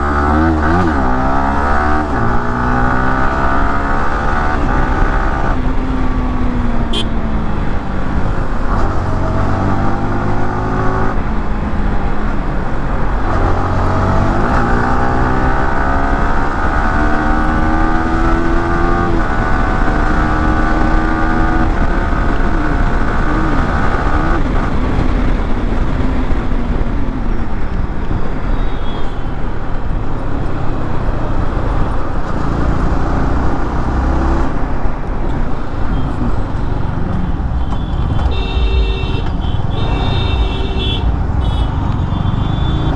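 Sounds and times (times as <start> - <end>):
motorcycle engine accelerating: 30.6 - 42.9
steady rushing noise: 34.4 - 42.9.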